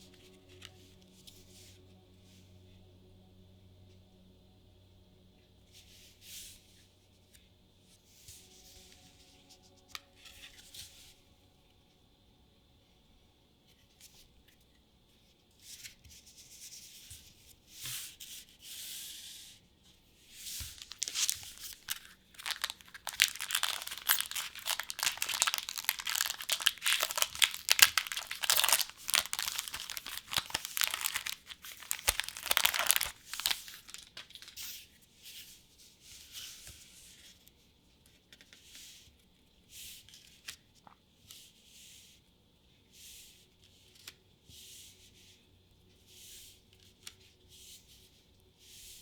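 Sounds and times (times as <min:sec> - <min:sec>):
foil wrapper tearing and crinkling: 0:20.8 - 0:34.6.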